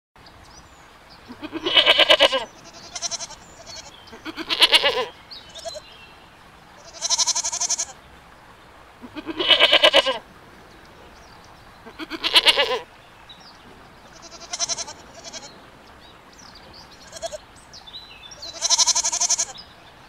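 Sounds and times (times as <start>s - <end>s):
goats bleating: 1.3s - 5.8s, 6.8s - 8.0s, 9.0s - 10.2s, 11.8s - 12.9s, 14.1s - 15.5s, 17.0s - 17.4s, 18.4s - 19.6s.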